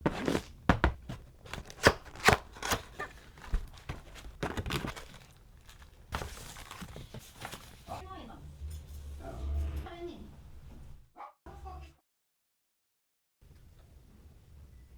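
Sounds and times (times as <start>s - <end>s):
cardboard box being opened: 0.0s - 8.0s
packaging rustling: 0.0s - 8.0s.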